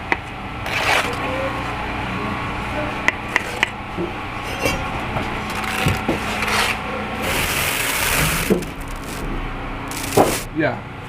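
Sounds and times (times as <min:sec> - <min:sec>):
trowel scraping mortar: 0:05.5 - 0:09.3, 0:09.9 - 0:10.5.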